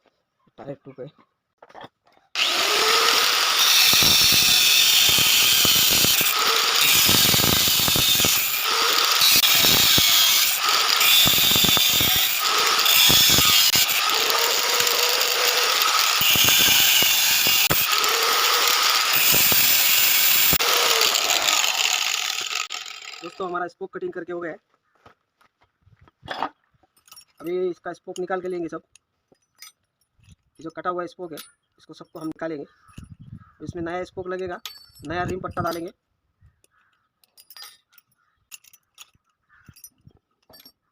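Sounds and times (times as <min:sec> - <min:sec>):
power cutter cutting metal spokes: 0:02.4 - 0:23.5.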